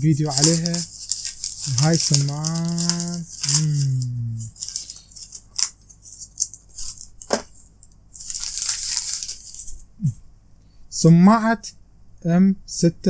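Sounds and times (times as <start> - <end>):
packaging rustling: 0.0 - 9.8.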